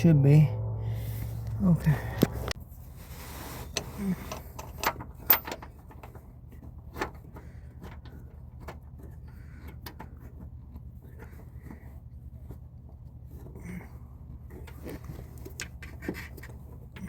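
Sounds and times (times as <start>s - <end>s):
steady low hum: 0.0s - 2.6s.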